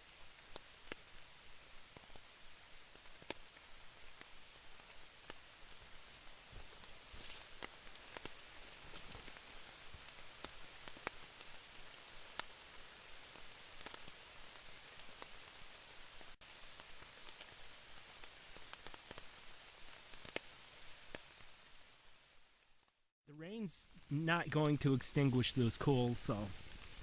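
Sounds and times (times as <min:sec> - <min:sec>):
steady rain falling: 0:00.0 - 0:27.0
raindrops ticking: 0:00.1 - 0:07.0, 0:13.3 - 0:15.4, 0:23.4 - 0:27.0.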